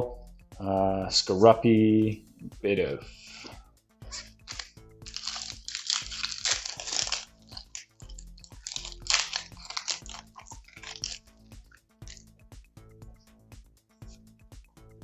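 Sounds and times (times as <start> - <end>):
quiet background music: 0.0 - 15.0
foil wrapper tearing and crinkling: 4.1 - 11.4.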